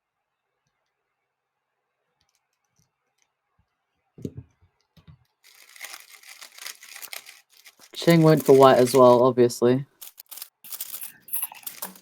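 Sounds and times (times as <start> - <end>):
rustling crinkling noise: 5.4 - 12.0.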